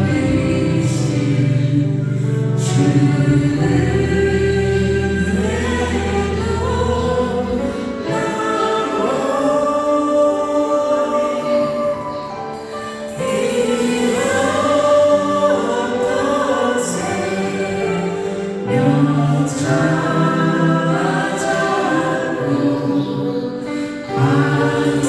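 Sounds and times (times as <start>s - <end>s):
choir singing praise song: 0.0s - 25.0s.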